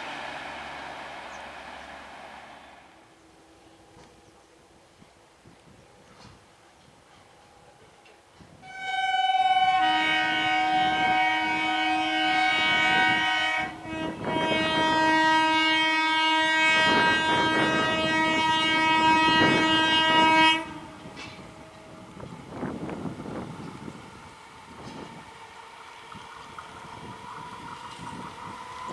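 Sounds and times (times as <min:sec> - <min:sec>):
train horn blasts: 0:00.0 - 0:04.2, 0:08.4 - 0:25.3.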